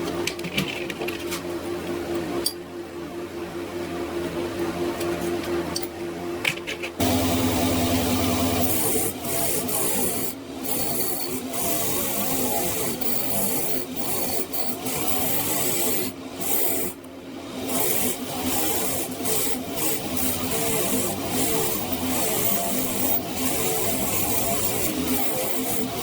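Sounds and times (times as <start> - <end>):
abrasive rubbing on metal: 20.2 - 26.0.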